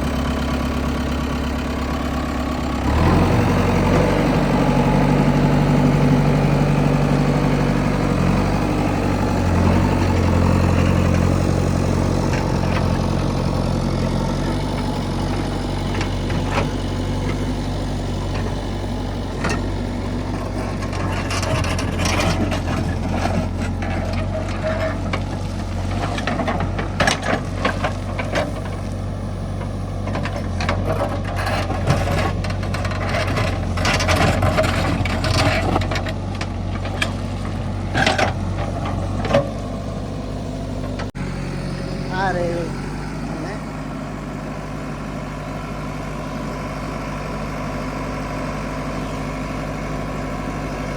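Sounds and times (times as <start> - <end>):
diesel engine running: 0.0 - 50.9
sharp knocks and clatter: 20.6 - 28.8, 30.1 - 39.5.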